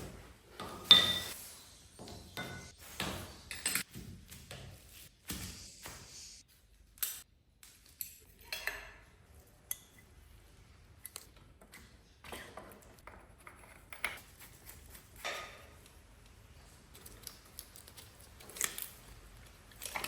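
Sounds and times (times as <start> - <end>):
metallic clinks and taps of tools: 2.4 - 3.9, 13.0 - 15.9.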